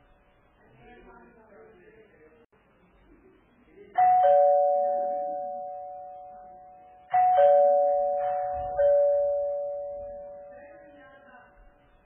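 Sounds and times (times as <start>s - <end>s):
two-note doorbell chime: 4.0s - 11.2s.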